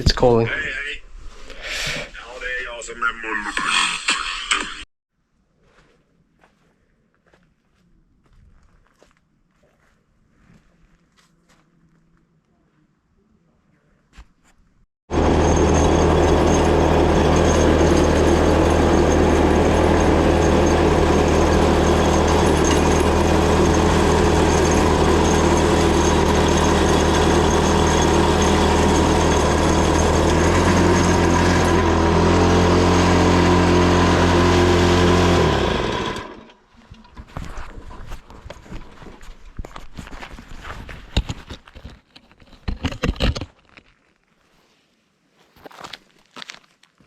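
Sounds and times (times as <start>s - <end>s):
small engine running: 15.1s - 36.6s.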